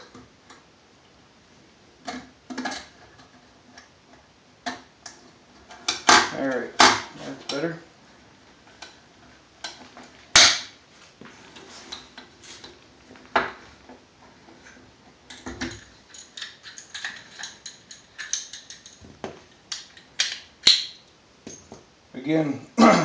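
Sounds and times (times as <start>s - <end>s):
metal parts clinking on workbench: 15.3s - 19.0s.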